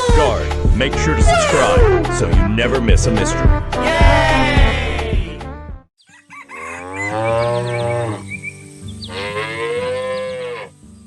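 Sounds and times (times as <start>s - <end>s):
cow mooing: 6.5s - 8.3s, 9.1s - 10.8s.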